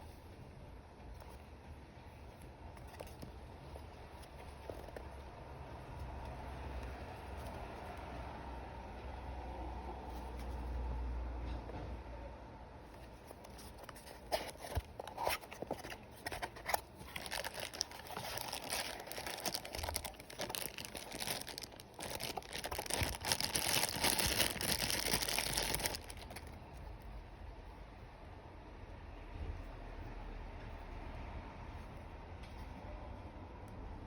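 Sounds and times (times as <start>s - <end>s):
packaging crinkling and tearing: 13.2s - 26.6s.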